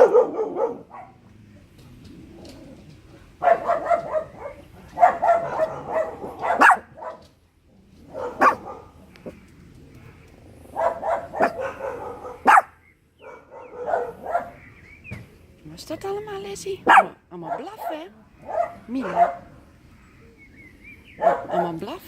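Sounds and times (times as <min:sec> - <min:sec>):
dogs barking: 0:00.0 - 0:01.3, 0:03.3 - 0:07.4, 0:08.0 - 0:09.4, 0:10.6 - 0:14.7, 0:16.8 - 0:19.7, 0:21.1 - 0:22.0.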